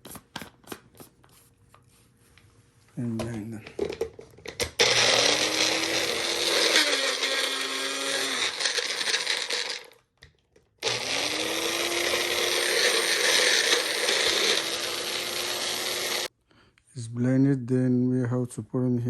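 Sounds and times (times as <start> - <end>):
electric blender running: 4.7 - 10.0, 10.8 - 16.3.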